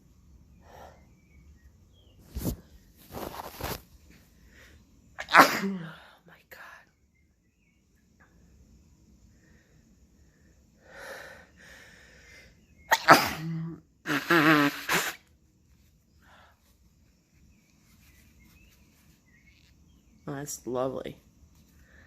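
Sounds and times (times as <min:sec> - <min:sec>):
woman sneezing loudly: 0:05.2 - 0:06.0, 0:12.9 - 0:15.2.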